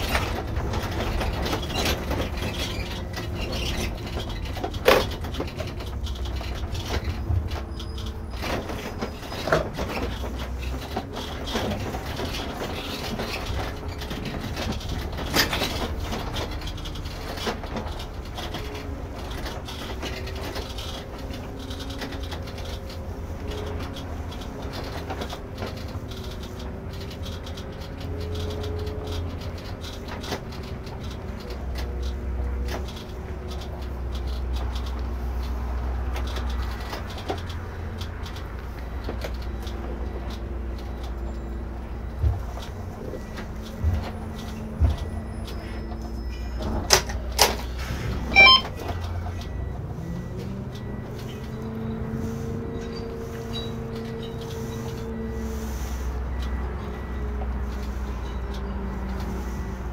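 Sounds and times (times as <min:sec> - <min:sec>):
sharp knocks and rattles: 0:00.0 - 0:41.0
coach engine rumble: 0:00.0 - 0:59.9.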